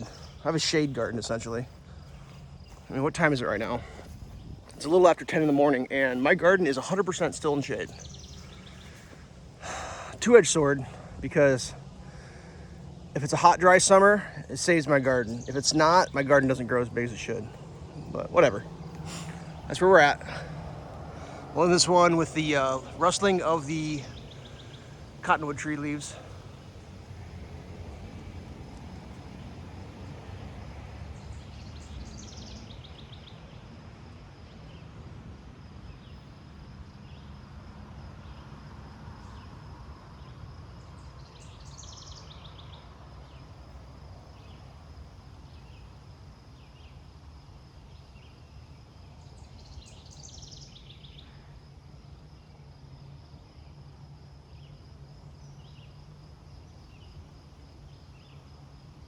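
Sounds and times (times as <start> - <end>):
leaves rustling: 0.0 - 31.6
bird singing trilled phrase: 13.2 - 20.3.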